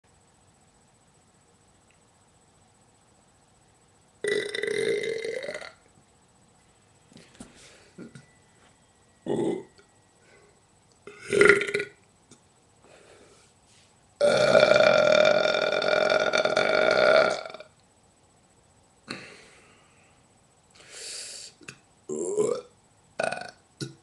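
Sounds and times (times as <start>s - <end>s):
person burping: 4.2s - 5.8s, 8.0s - 8.2s, 9.3s - 9.8s, 11.1s - 12.0s, 14.2s - 17.7s, 19.1s - 19.4s, 22.1s - 24.0s.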